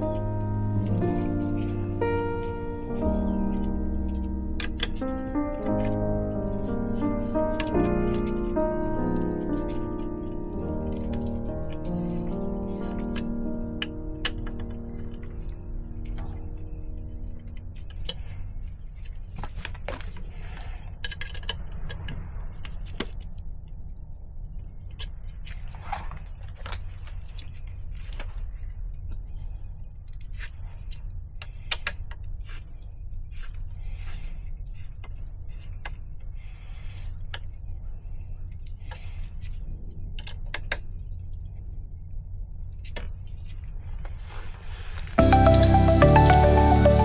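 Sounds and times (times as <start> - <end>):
steady low hum: 0.0 - 19.4.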